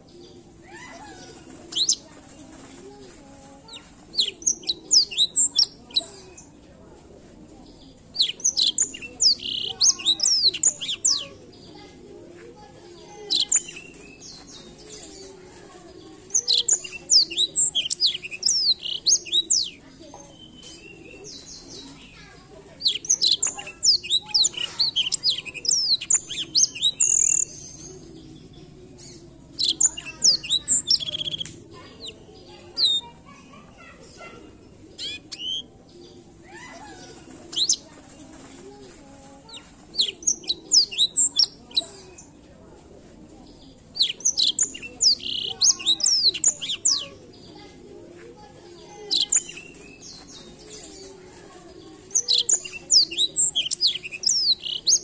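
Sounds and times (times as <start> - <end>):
canary twittering song: 0.7 - 2.7, 3.6 - 6.5, 8.1 - 11.6, 13.1 - 15.3, 16.2 - 22.2, 22.8 - 33.2, 34.9 - 35.7, 36.5 - 38.5, 39.4 - 42.3, 43.8 - 47.4, 49.0 - 51.2, 52.0 - 55.0.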